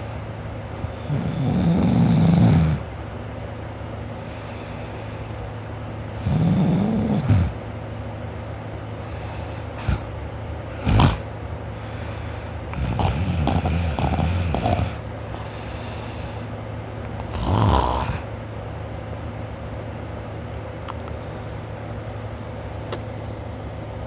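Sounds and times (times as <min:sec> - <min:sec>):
steady low hum: 0:00.0 - 0:24.0
man snoring: 0:00.8 - 0:02.9, 0:06.2 - 0:07.6, 0:09.1 - 0:10.1, 0:10.7 - 0:11.3, 0:12.0 - 0:16.3, 0:17.2 - 0:18.3.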